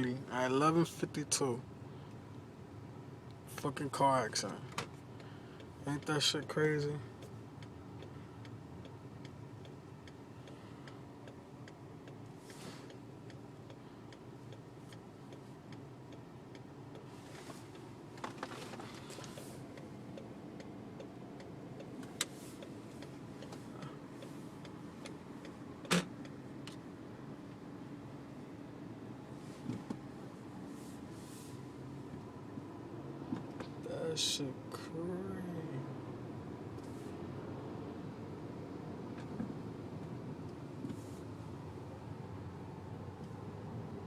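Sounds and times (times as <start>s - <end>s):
idling car engine hum: 0.0s - 44.0s
car indicator clicking: 7.2s - 17.1s, 17.7s - 27.6s.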